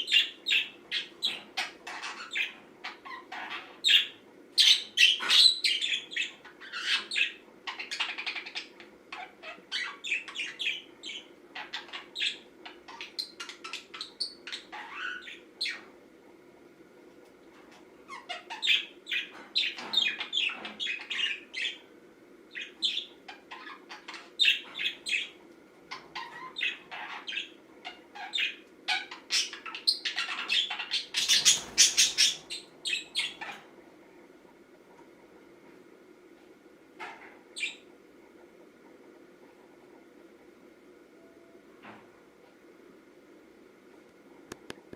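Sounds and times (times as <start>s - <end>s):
faint steady hum: 0.0s - 44.9s
budgerigar chirping and warbling: 18.1s - 21.8s, 25.9s - 33.6s.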